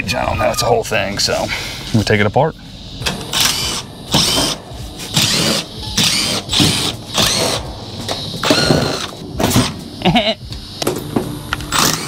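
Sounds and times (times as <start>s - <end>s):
power driver spinning screws: 3.3s - 7.6s, 8.4s - 9.7s, 11.7s - 12.0s.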